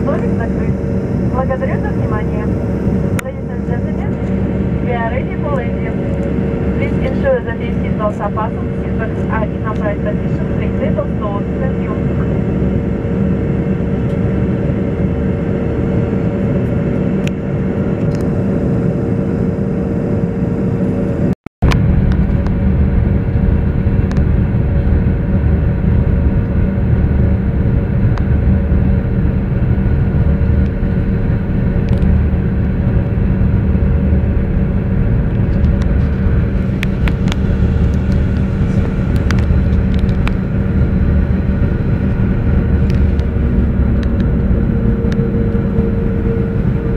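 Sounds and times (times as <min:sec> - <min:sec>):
jet cabin engine hum: 0:00.0 - 0:46.9.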